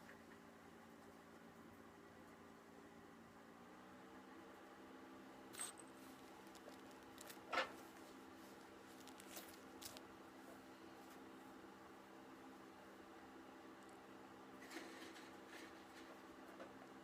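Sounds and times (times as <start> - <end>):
faint steady hum: 0.0 - 17.0
small clicks and ticks: 5.5 - 7.7, 8.9 - 10.1.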